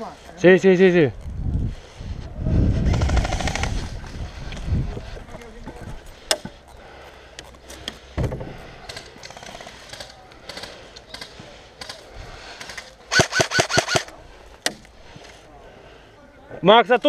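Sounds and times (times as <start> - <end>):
airsoft gun rapid shots: 13.1 - 14.1.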